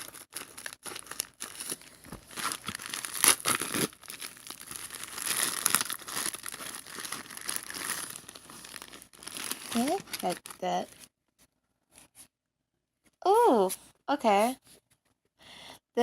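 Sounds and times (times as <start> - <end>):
packaging crinkling and tearing: 0.0 - 11.1.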